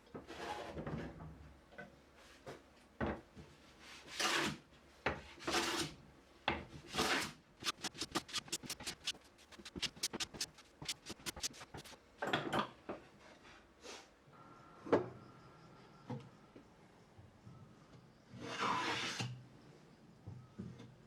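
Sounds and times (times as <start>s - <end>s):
hand tool scraping wood: 7.0s - 12.0s.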